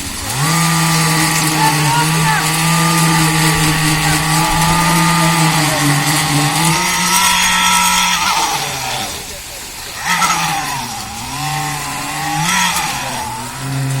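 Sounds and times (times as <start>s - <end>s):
motor running steadily: 0.0s - 14.0s.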